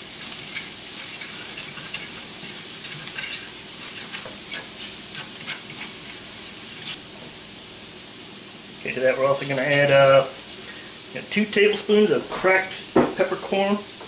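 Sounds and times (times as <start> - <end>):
utensil scraping a pan: 0.0 - 7.0
shallot sizzling in butter: 0.0 - 14.0.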